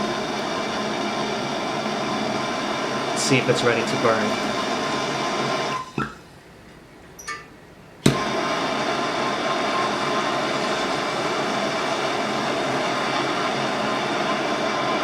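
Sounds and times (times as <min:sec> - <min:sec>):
gas torch hissing: 0:00.0 - 0:06.3, 0:08.0 - 0:15.0
torch igniter click: 0:08.0 - 0:08.4.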